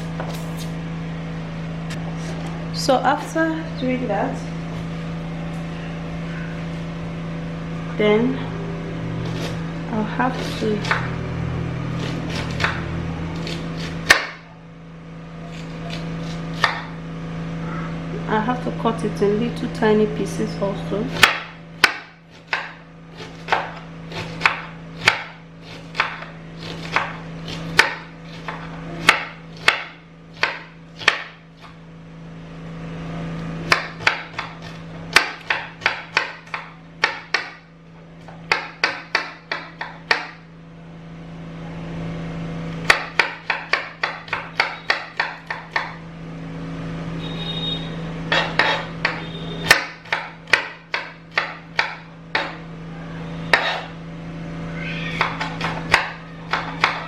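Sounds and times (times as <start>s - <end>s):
knife chopping on cutting board: 0.1s - 0.7s, 10.2s - 11.1s, 12.0s - 14.4s, 15.5s - 17.0s, 21.1s - 31.8s, 33.6s - 37.6s, 38.2s - 40.4s, 42.8s - 46.0s, 48.3s - 52.6s, 53.5s - 54.0s, 55.1s - 57.0s.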